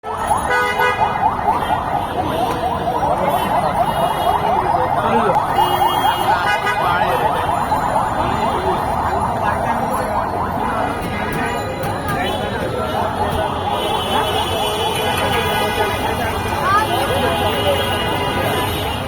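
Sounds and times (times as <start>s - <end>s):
emergency siren yelping: 0.0s - 17.4s
street traffic noise: 0.0s - 19.0s.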